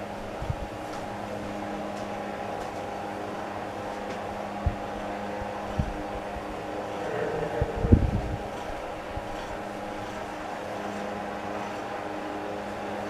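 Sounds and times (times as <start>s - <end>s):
table fan motor hum: 5.6s - 11.9s.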